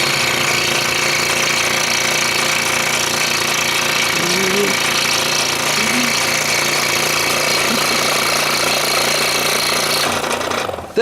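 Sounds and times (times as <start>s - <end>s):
scroll saw buzzing: 0.0s - 11.0s.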